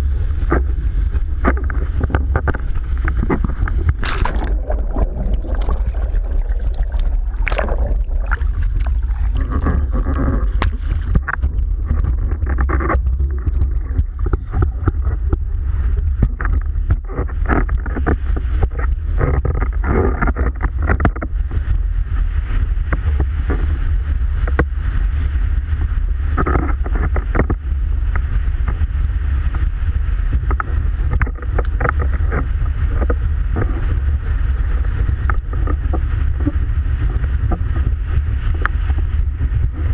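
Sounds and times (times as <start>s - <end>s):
board hull slapping water: 0.0s - 39.9s
low rumble: 0.0s - 39.9s
wind buffeting microphone: 0.0s - 39.9s.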